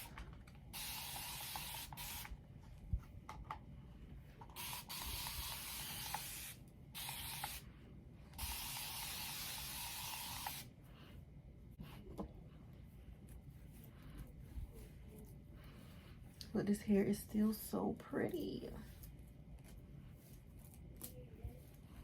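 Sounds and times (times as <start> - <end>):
spray bottle misting: 0.7 - 2.4, 4.6 - 7.6, 8.4 - 10.7.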